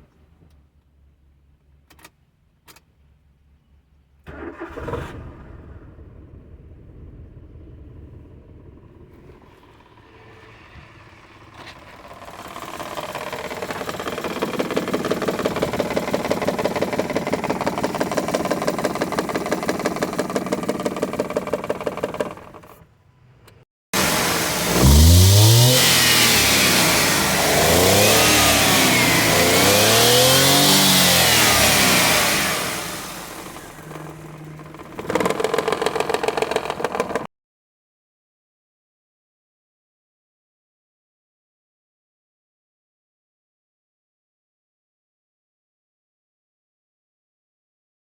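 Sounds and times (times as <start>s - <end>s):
car engine starting and idling: 4.2s - 37.3s
engine revving: 7.5s - 22.7s, 24.0s - 37.3s.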